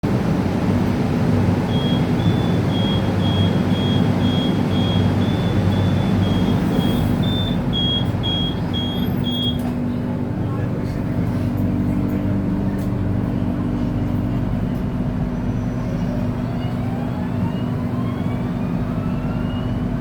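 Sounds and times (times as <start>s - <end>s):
low train hum: 0.0s - 20.0s
high door warning beeps: 1.6s - 9.7s.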